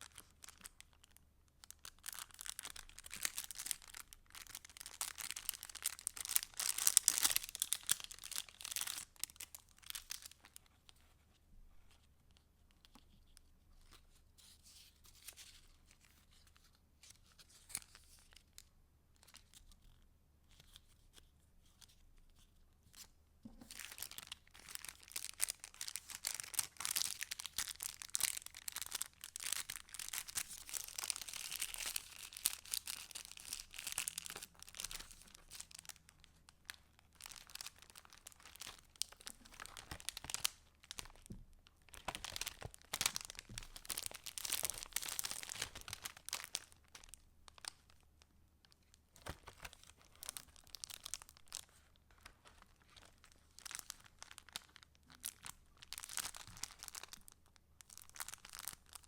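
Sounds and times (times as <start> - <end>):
paper rustling and crinkling: 37.1 - 47.7, 48.8 - 54.8.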